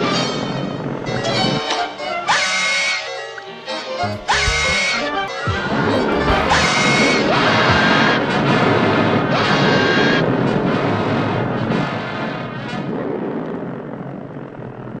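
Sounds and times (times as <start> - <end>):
high tone: 4.0 - 8.0
cartoon music: 4.0 - 8.1.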